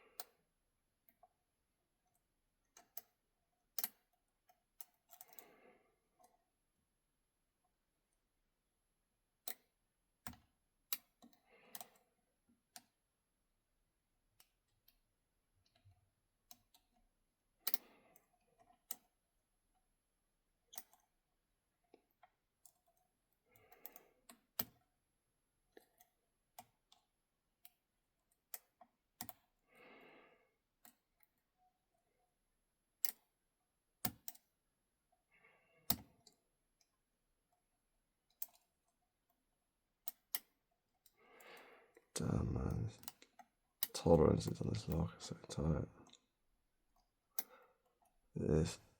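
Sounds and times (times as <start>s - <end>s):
lock pick metallic clicks: 34.0s - 34.4s.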